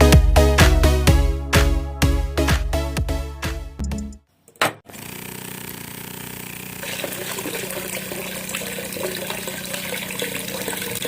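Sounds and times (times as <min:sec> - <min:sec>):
water gushing and splashing: 0:06.8 - 0:11.0.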